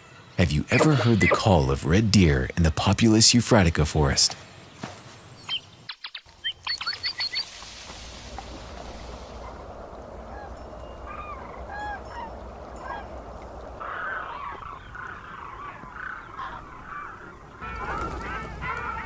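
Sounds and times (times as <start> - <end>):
geese honking: 13.8 - 19.0.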